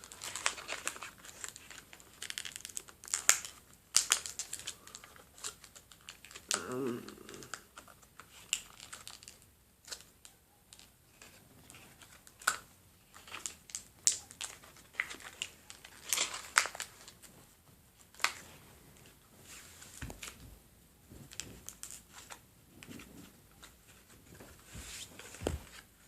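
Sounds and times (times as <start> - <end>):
packaging crinkling and tearing: 0.0 - 17.3, 18.0 - 18.4, 21.2 - 22.4.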